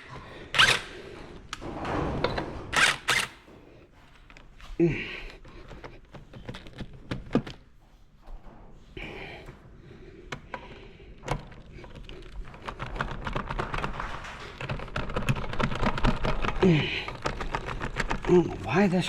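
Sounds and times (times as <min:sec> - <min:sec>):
hand tools clicking on metal: 0:00.0 - 0:01.6.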